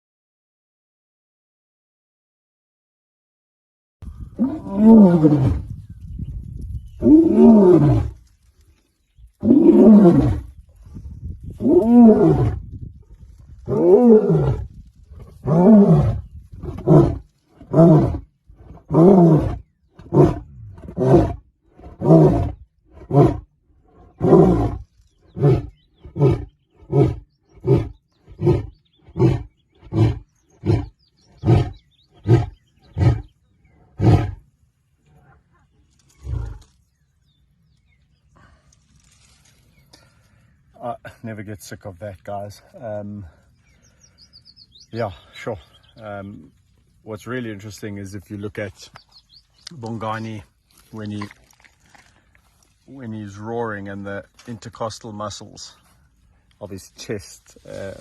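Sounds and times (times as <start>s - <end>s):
lion grunting roars: 4.3s - 5.7s, 7.0s - 8.2s, 9.4s - 10.5s, 11.6s - 12.7s, 13.6s - 34.4s, 36.2s - 36.7s
lion roaring: 4.4s - 5.7s, 7.0s - 8.2s, 9.4s - 10.5s, 11.6s - 12.7s, 13.3s - 35.4s, 36.1s - 36.7s.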